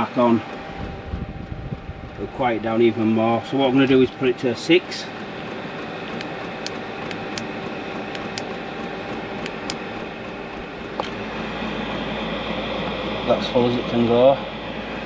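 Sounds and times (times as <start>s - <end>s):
fuel pump ticking: 0.0s - 11.2s
deep heater rumble: 0.0s - 15.0s
heater blower whirring: 0.0s - 15.0s.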